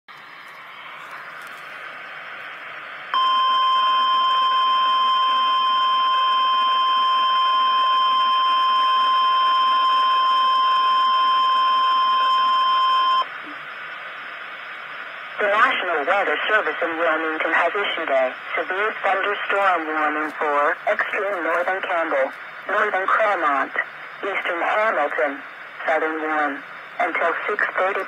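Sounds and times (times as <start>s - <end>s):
radio hiss: 0.1s - 3.4s, 9.7s - 28.0s
steady high alarm tone: 3.1s - 13.3s.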